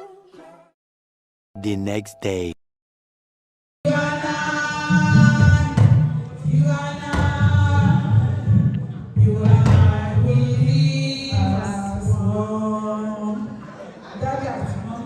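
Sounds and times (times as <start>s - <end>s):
music with singing voices: 3.9s - 13.5s.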